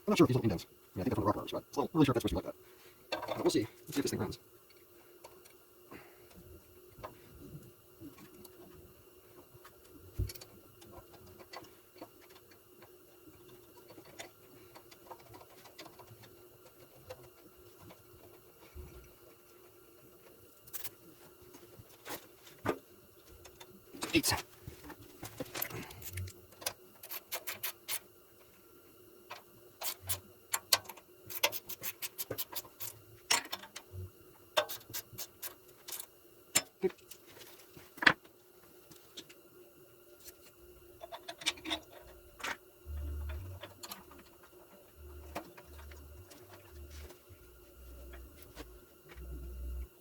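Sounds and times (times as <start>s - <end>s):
faint hum: 0.0s - 50.0s.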